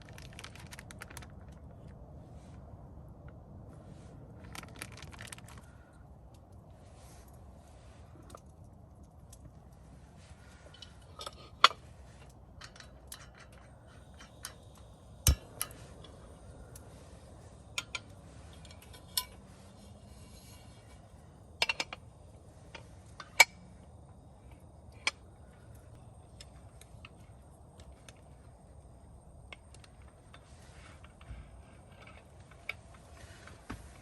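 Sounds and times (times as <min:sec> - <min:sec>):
sharp clicks and knocks: 0:12.6 - 0:16.8.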